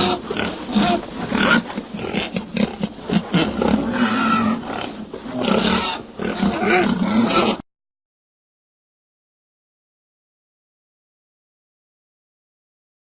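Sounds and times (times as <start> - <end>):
pigs grunting and oinking: 0.0 - 7.6.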